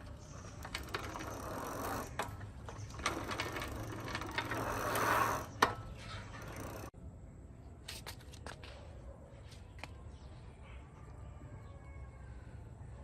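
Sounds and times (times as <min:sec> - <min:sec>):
rasping stretch: 0:00.0 - 0:06.9
ratcheting mechanical clicks: 0:00.0 - 0:06.9.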